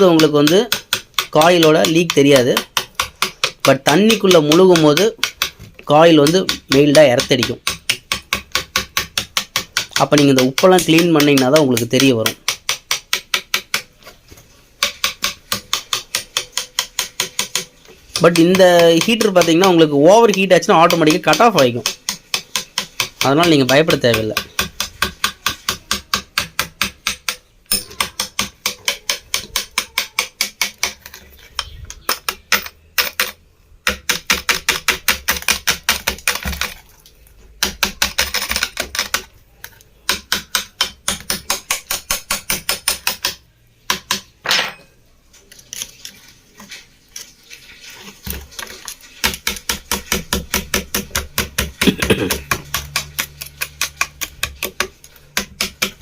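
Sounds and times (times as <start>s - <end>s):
spanner tapping on metal: 0.0s - 13.8s, 14.8s - 35.8s, 49.2s - 56.0s.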